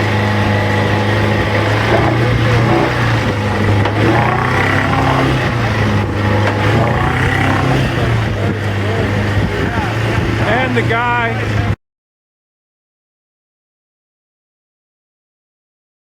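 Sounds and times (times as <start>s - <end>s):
boat engine running: 0.0s - 11.8s.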